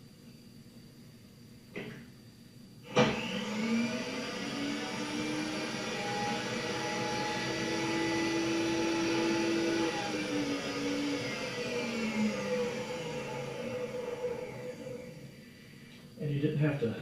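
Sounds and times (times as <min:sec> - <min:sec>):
milling machine whining: 0:02.9 - 0:16.1.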